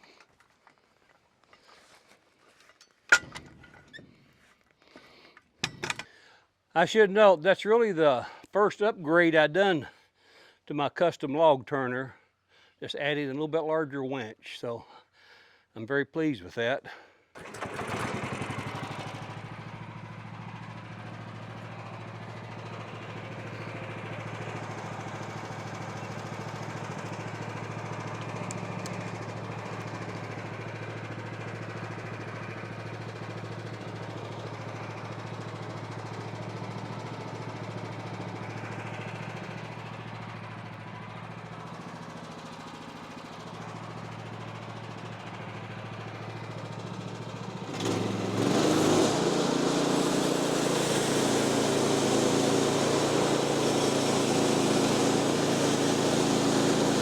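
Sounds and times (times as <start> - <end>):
small engine running: 17.4 - 57.0.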